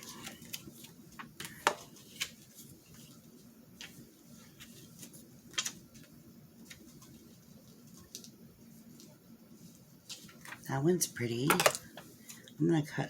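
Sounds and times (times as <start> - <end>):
paper cut-outs clicking and tapping: 11.3 - 12.0.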